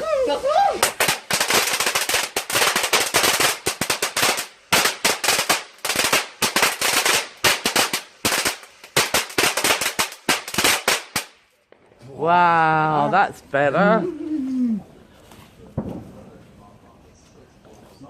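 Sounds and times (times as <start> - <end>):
firework crackling: 0.0 - 12.1, 15.3 - 16.6.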